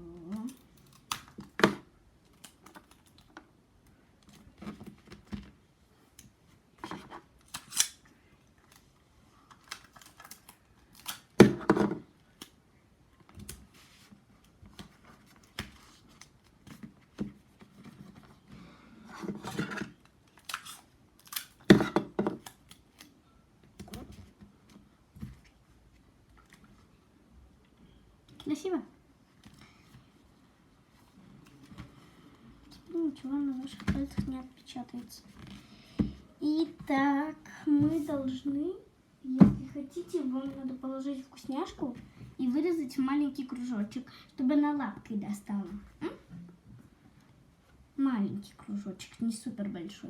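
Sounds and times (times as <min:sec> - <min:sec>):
crinkling paper: 0:07.4 - 0:11.4.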